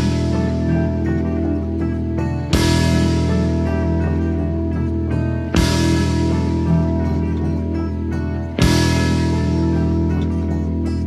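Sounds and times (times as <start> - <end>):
background music with held chords: 0.0 - 11.0
loud musical hit: 2.5 - 4.8.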